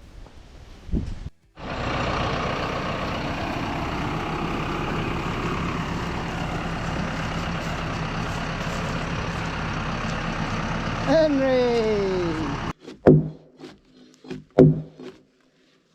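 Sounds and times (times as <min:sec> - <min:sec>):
large engine running: 0:01.6 - 0:12.8.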